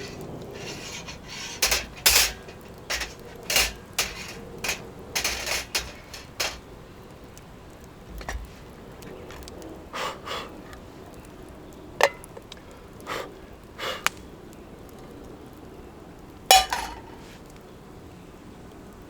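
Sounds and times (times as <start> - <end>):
knocks and clinks of hard objects: 0.0 - 6.6, 16.5 - 17.2.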